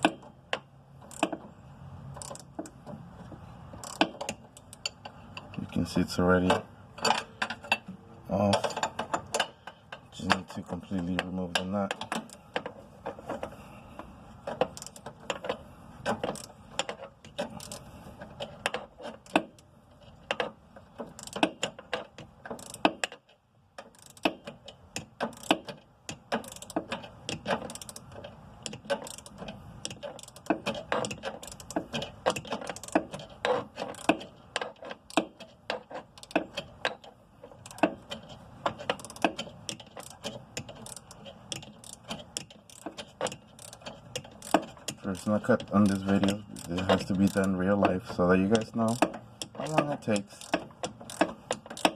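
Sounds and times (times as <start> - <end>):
ratcheting wrench clicking: 0.0 - 1.4, 2.1 - 2.8, 3.8 - 5.6, 14.5 - 51.9.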